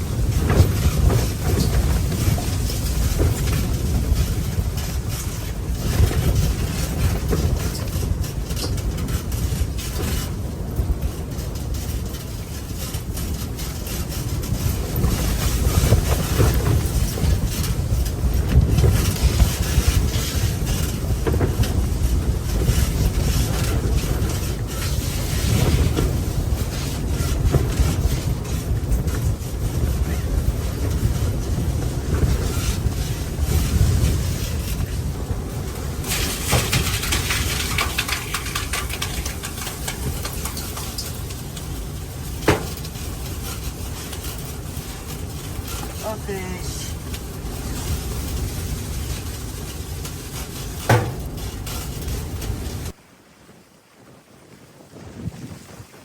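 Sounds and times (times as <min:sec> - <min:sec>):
blizzard wind buffeting microphone: 0:00.0 - 0:56.0
small clicks and crackles: 0:35.7 - 0:53.0.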